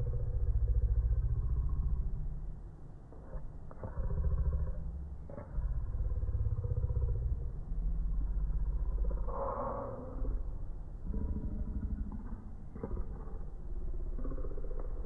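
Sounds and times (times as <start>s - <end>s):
low motor rumble: 0.0s - 15.0s
rough mid-range noise: 4.8s - 15.0s.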